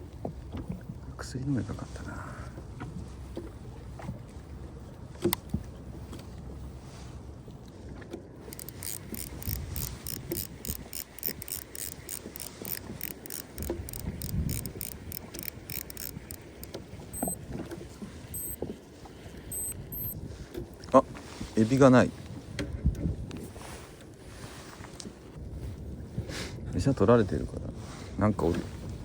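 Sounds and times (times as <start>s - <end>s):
fishing reel gears ticking: 8.4s - 17.4s, 18.4s - 18.6s, 19.5s - 20.2s
short high beeps: 17.1s - 17.4s, 18.4s - 18.6s, 19.5s - 20.2s.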